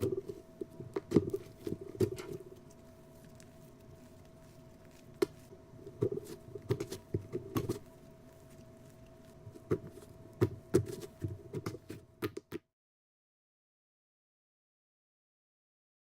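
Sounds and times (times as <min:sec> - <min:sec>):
slime squelching and popping: 0:00.0 - 0:12.0
faint steady hum: 0:00.0 - 0:12.5.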